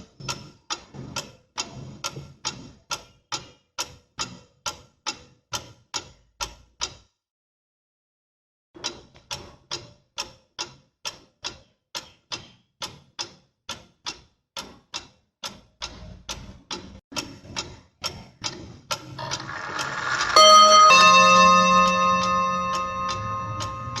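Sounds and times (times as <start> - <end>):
pendulum clock ticking: 0.0 - 7.1, 8.8 - 24.0
music: 19.9 - 24.0.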